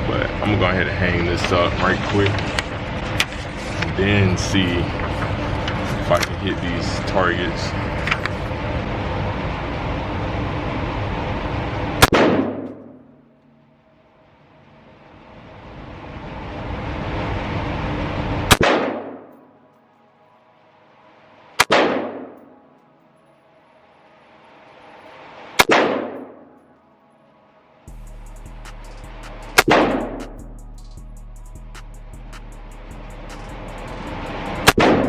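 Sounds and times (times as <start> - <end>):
gunshots echoing indoors: 12.0 - 13.3, 18.5 - 19.3, 21.6 - 22.6, 25.6 - 26.6, 34.6 - 35.0.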